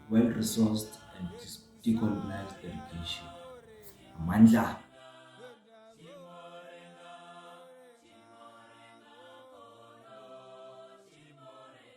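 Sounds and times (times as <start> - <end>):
faint choral singing: 0.0 - 11.9.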